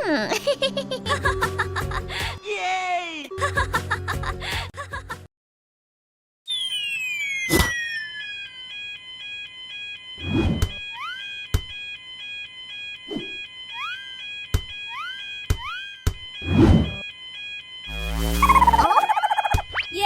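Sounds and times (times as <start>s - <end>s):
electronic beep tones: 14.8s - 17.1s, 17.9s - 20.0s
short rising swoops: 17.9s - 18.9s
falling whistle-like tone: 17.9s - 19.7s.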